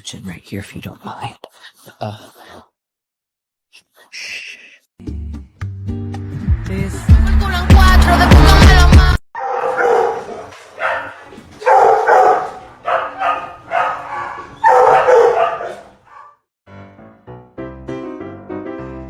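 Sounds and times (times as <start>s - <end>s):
burst of music: 6.3s - 9.2s
dog barking: 9.4s - 16.4s.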